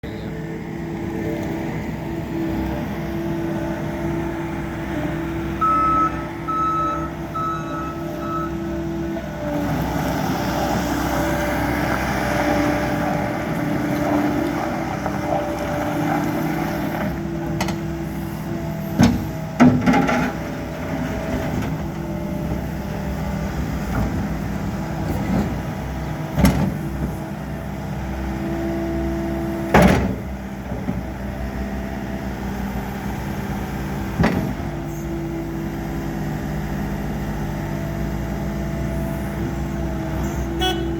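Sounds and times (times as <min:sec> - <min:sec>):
diesel engine running: 0:00.0 - 0:40.9
backup alarm beeping: 0:05.6 - 0:08.6.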